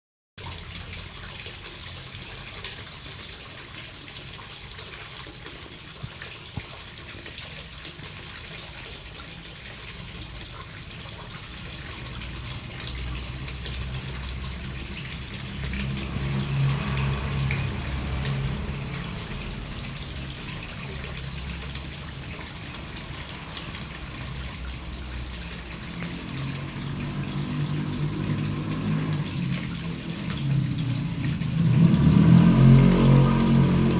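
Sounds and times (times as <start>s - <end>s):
steady rain falling: 11.2s - 33.9s.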